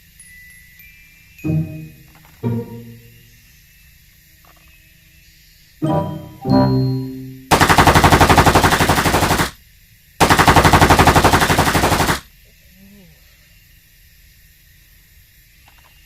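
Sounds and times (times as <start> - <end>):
automatic machine-gun fire: 7.5 - 9.6, 10.2 - 12.2.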